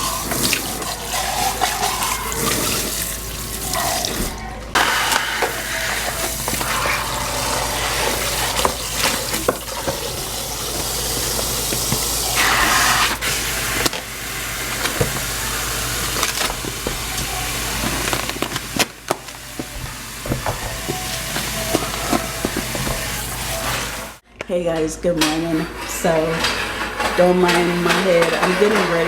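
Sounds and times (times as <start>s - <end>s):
water running into sink: 0.0s - 24.2s
dishes knocking and clinking: 3.7s - 12.8s, 13.7s - 24.0s.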